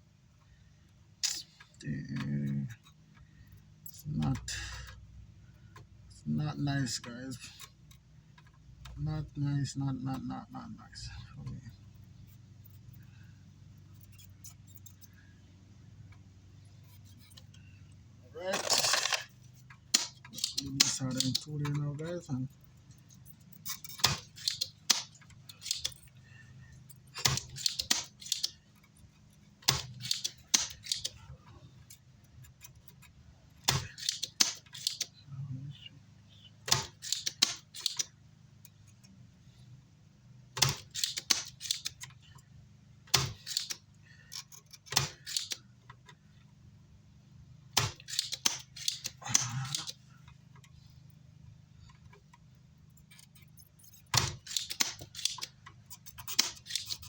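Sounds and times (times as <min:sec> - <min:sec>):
steady low hum: 0:00.0 - 0:57.0
metal tools clicking and clattering: 0:18.4 - 0:31.3, 0:31.9 - 0:35.2, 0:40.6 - 0:42.4, 0:43.2 - 0:45.7, 0:48.0 - 0:50.0, 0:52.9 - 0:57.0.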